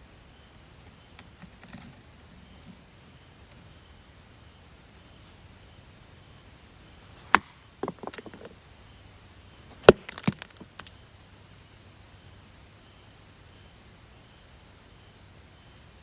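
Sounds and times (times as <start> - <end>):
sharp woody cracks: 7.2 - 8.5, 9.8 - 10.9.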